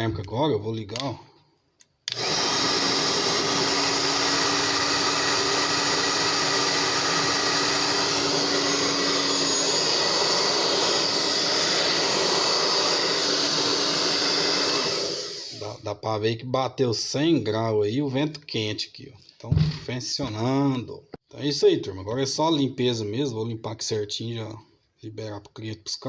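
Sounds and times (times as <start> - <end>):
hair dryer running: 2.1 - 15.8.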